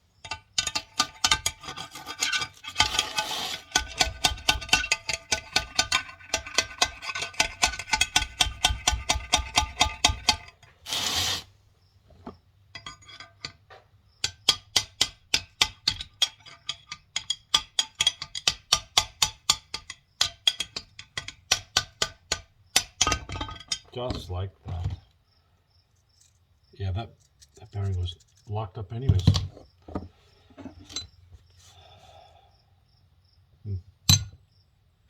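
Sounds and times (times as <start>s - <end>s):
scraping rush: 2.8s - 3.8s, 10.9s - 11.5s.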